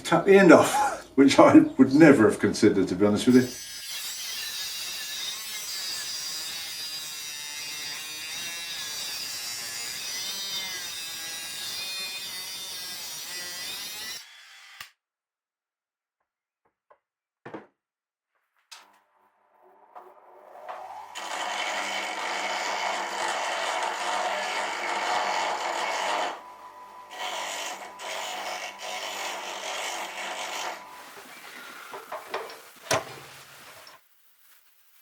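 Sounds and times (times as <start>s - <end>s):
lathe cutting steel: 3.3s - 14.9s, 20.1s - 33.2s.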